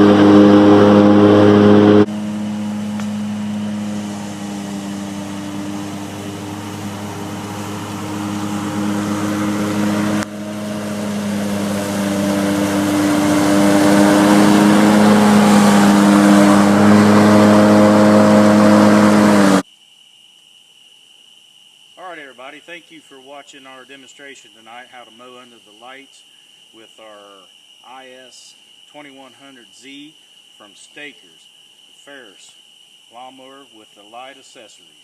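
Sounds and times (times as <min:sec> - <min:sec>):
mower engine running: 0:00.0 - 0:19.6.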